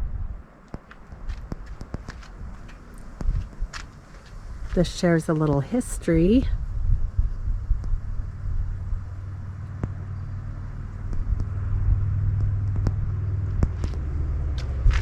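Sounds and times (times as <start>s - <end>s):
car engine and road noise: 0.0s - 15.0s.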